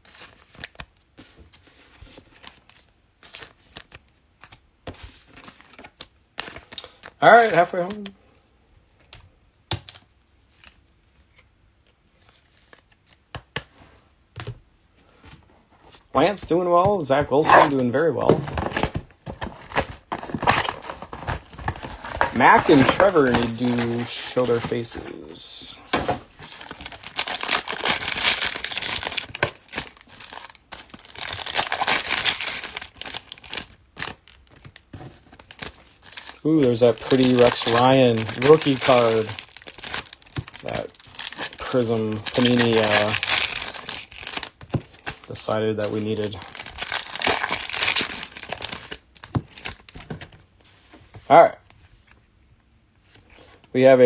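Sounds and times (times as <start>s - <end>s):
plastic wrapper crinkling and tearing: 17.4s - 50.1s.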